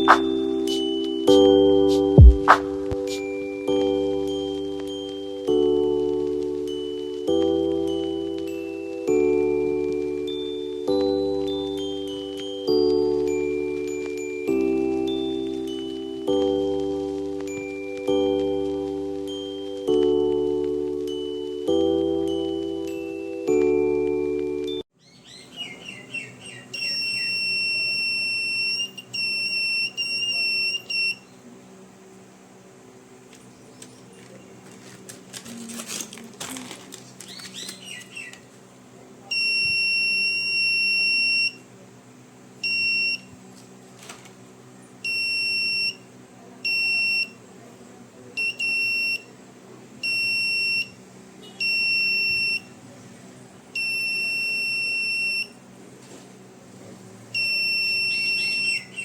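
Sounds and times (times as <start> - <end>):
alarm buzzer beeping: 0.0 - 4.2, 26.7 - 31.3, 39.3 - 41.6, 42.6 - 43.3, 45.0 - 46.1, 46.7 - 47.4, 48.4 - 49.2, 50.0 - 52.7, 53.8 - 55.6, 57.4 - 59.0
low steady hum: 0.0 - 24.8
faint clicks and chirps: 37.0 - 38.5.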